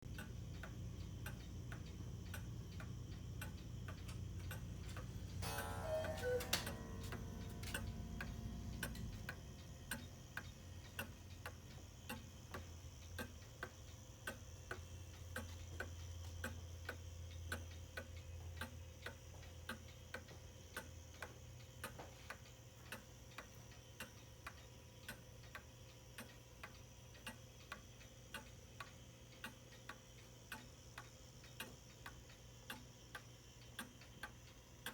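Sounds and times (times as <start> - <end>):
clock ticking: 0.1 - 34.9
brief ringing: 5.4 - 9.2.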